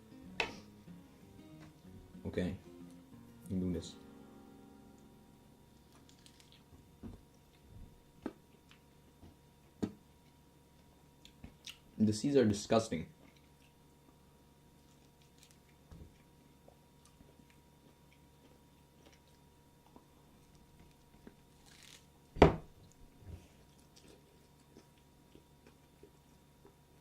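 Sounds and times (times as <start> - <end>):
person chewing: 8.5 - 9.0, 11.2 - 11.9, 13.2 - 14.2, 14.8 - 22.0, 22.8 - 27.0.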